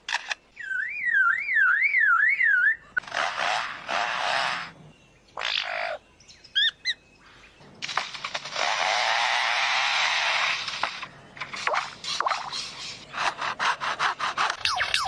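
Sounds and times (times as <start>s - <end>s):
bird chirps: 0.5s - 3.0s, 4.6s - 7.8s, 14.6s - 15.0s
lyrebird rasping calls: 12.0s - 15.0s.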